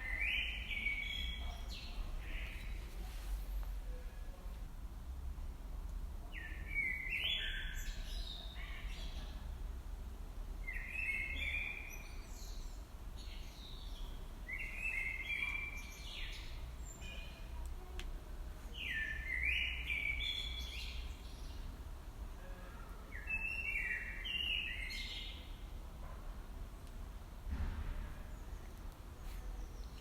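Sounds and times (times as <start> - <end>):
songbird singing: 0.0 - 3.0, 6.2 - 9.4, 10.6 - 25.7
low garden background rumble: 0.0 - 30.0.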